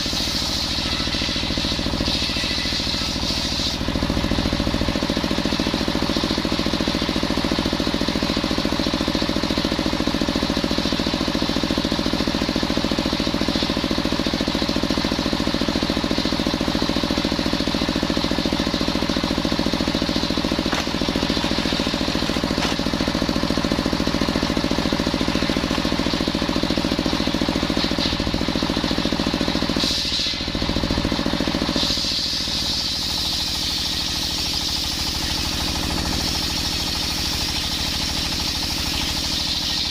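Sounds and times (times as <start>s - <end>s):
circular saw cutting wood: 0.0s - 6.4s, 15.4s - 39.9s
engine running: 0.0s - 39.9s.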